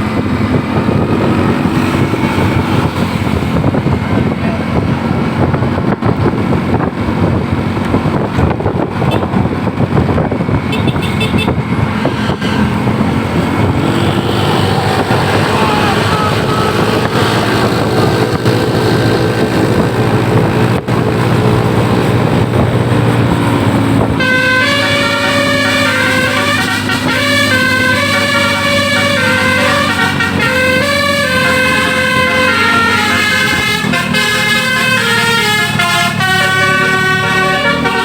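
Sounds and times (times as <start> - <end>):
bus engine: 0.0 - 38.0
road noise: 0.0 - 38.0
multi-trumpet bus horn melody: 9.0 - 21.4, 24.0 - 38.0.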